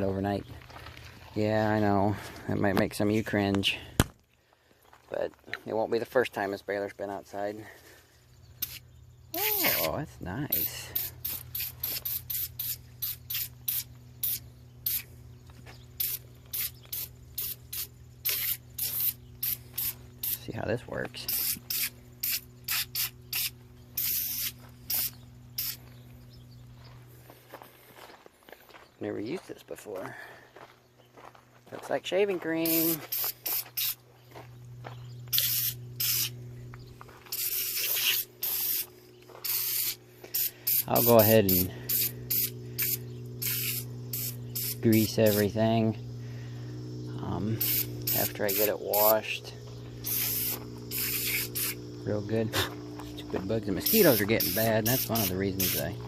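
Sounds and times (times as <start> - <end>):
steady low hum: 0.0 - 56.0
aerosol spray hissing: 8.6 - 8.8, 9.4 - 15.1, 16.0 - 20.5, 21.3 - 25.9, 32.6 - 34.0, 35.3 - 36.4, 37.3 - 56.0.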